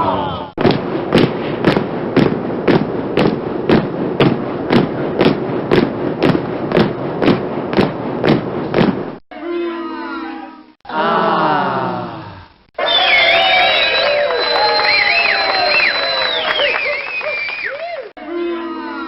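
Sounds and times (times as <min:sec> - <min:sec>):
heavy thumps: 0:00.6 - 0:09.2
steady rushing noise: 0:00.6 - 0:09.2.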